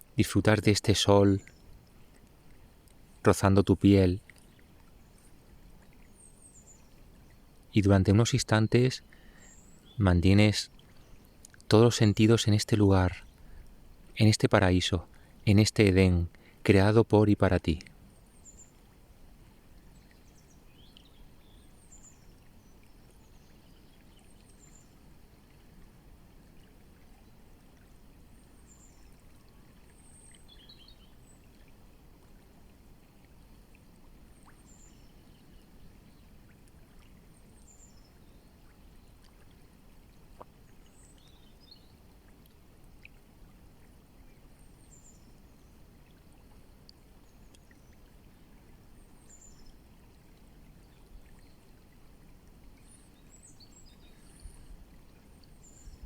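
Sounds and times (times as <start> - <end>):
flowing river: 0.0 - 56.0
small birds chirping: 6.0 - 13.7, 19.8 - 25.0, 28.3 - 31.6, 40.4 - 42.0, 52.8 - 56.0.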